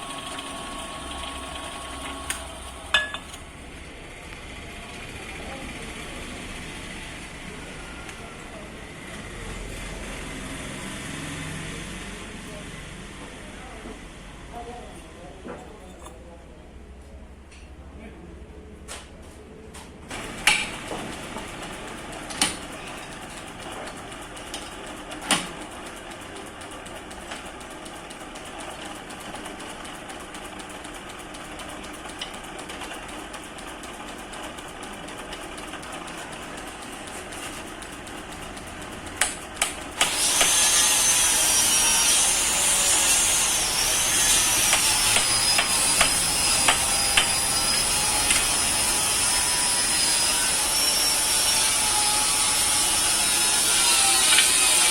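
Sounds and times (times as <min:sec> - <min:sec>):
metal lathe grinding with whine: 0:40.0 - 0:54.9
sharp knocks: 0:44.7 - 0:47.4.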